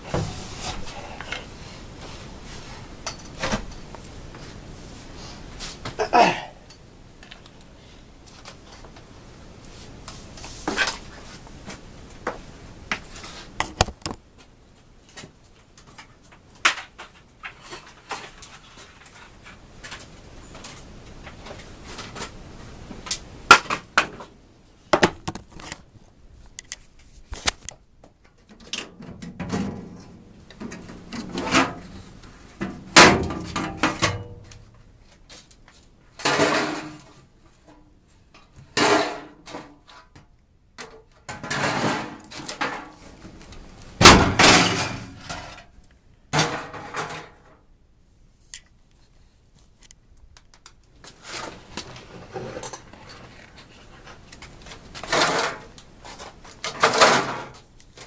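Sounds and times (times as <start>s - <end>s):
objects clattering and knocking: 13.0s - 14.2s, 24.9s - 25.8s, 28.4s - 35.5s, 40.8s - 47.6s, 51.0s - 58.0s.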